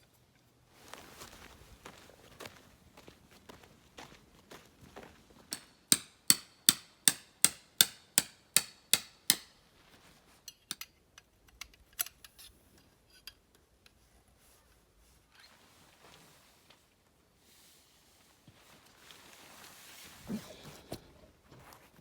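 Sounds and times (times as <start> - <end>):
hammer striking tent pegs: 5.5 - 9.6.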